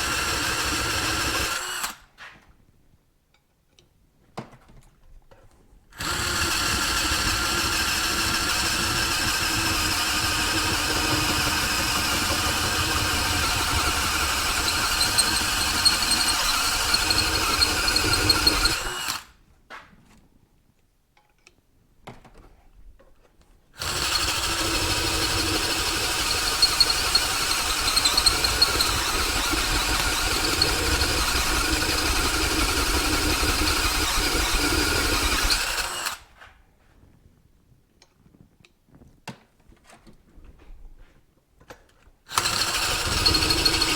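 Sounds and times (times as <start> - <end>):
electric drill boring steel: 0.0 - 2.0, 6.0 - 19.3, 23.8 - 36.2, 42.3 - 43.9.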